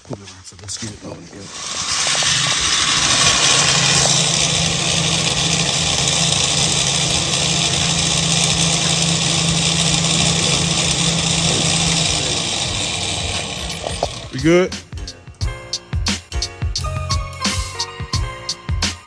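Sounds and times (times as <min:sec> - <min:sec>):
engine running with hiss: 0:01.4 - 0:14.5.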